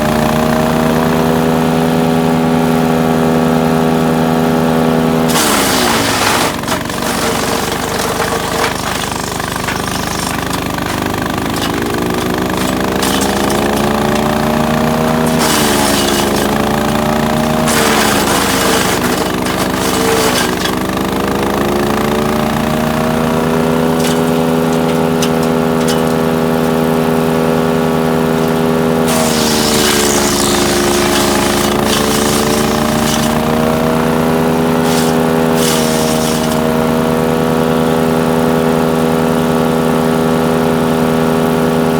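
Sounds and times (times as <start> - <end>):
wood chipper engine running: 0.0 - 41.9
wood being chipped: 5.3 - 21.1, 29.0 - 34.0, 34.7 - 37.0.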